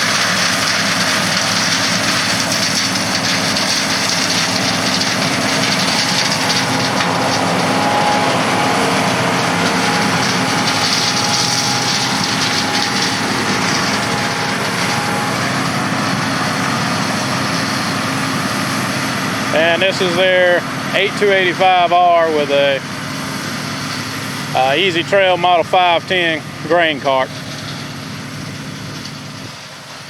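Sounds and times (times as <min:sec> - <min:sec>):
diesel machinery running: 0:00.0 - 0:30.0
faint whine: 0:04.0 - 0:27.4.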